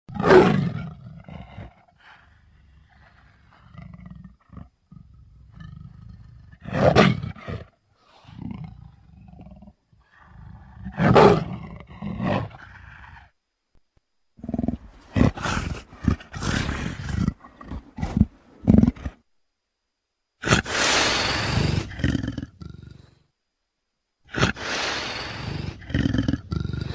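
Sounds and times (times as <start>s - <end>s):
person growling like a monster: 14.4s - 19.2s, 20.4s - 23.0s, 25.2s - 26.9s.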